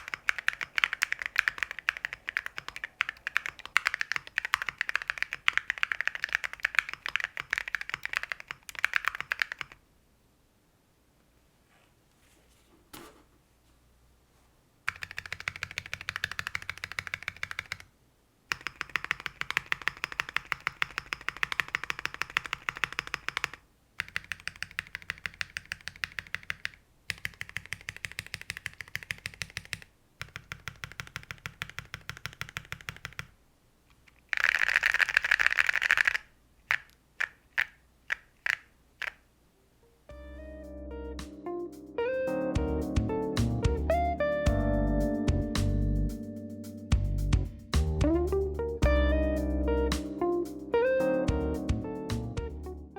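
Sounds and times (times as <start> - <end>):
mechanical keyboard typing: 0.0 - 9.8, 14.9 - 17.9, 18.5 - 33.3, 34.1 - 39.2.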